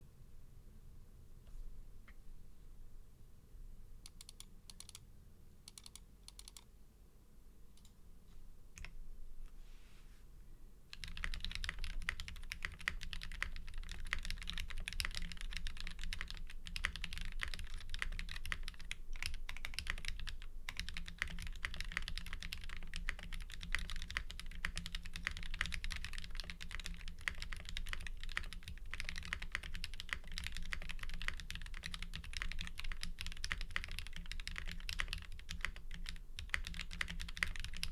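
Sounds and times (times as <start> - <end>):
mechanical keyboard typing: 4.1 - 5.0, 5.7 - 6.7, 10.9 - 37.9.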